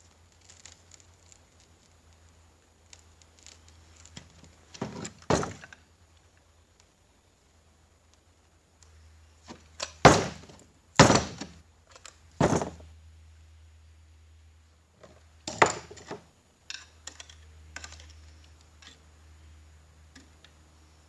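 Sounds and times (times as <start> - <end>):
metal parts clunking and clinking: 4.2 - 5.8, 12.4 - 12.8, 15.5 - 16.2
loud knocks: 4.8 - 5.7, 10.1 - 11.6, 12.4 - 12.8.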